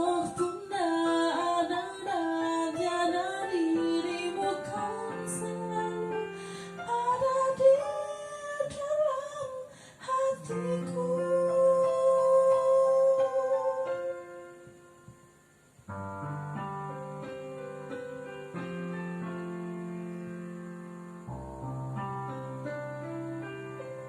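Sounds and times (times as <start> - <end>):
woman singing slow melody: 0.0 - 14.6
soft instrumental backing: 10.4 - 24.0.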